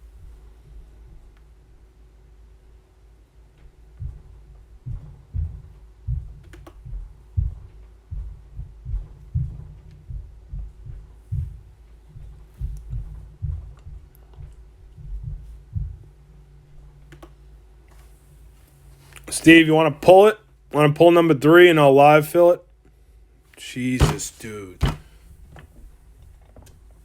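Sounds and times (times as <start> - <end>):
dull low thumps: 3.9 - 16.3.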